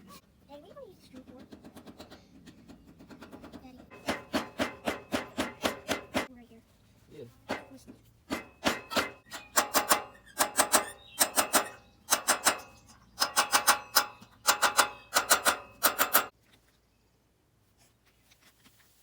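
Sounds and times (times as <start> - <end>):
sharp taps on metal: 1.2 - 6.3, 7.4 - 16.4.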